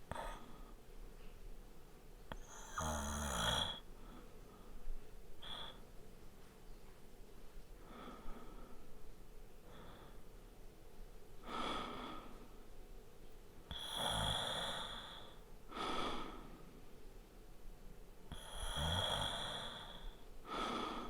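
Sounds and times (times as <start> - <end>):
man snoring: 2.3 - 3.9, 13.7 - 15.3, 18.3 - 20.1.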